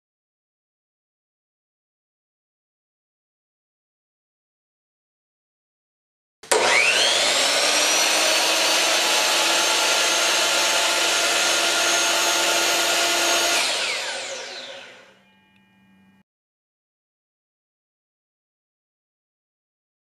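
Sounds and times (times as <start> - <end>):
miter saw motor whining: 6.5 - 16.2.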